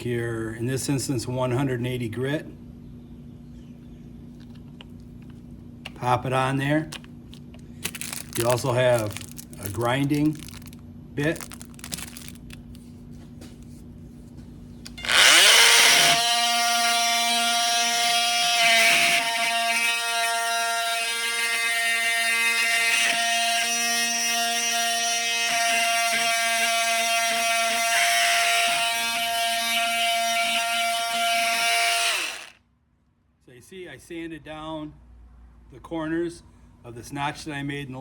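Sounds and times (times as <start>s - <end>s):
high-pitched tool whine: 14.9s - 32.6s
oscillating tool sanding wood: 15.0s - 32.5s.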